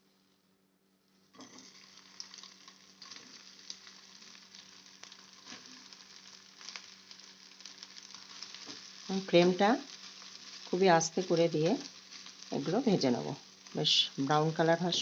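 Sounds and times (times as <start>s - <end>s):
food sizzling in hot oil: 1.3s - 15.0s.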